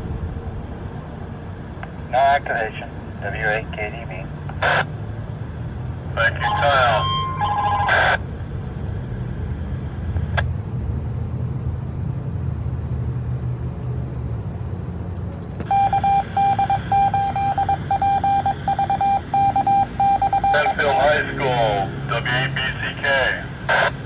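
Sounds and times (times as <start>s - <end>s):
steady low rumble: 0.0s - 24.0s
pulsing electronic beep tone: 15.7s - 21.0s.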